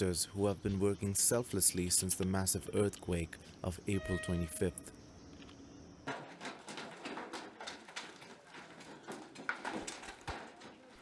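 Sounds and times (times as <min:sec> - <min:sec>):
construction knocks and clatter: 0:06.0 - 0:11.0.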